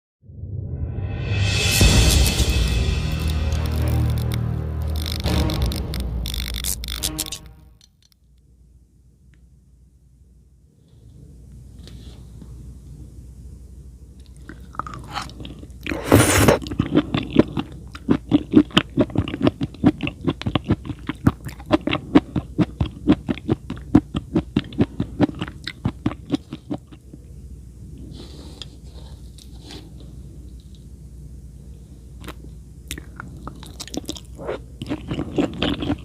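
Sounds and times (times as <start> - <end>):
crunchy chewing: 14.2 - 27.3, 32.2 - 36.0
bite: 14.4 - 27.0, 32.2 - 36.0.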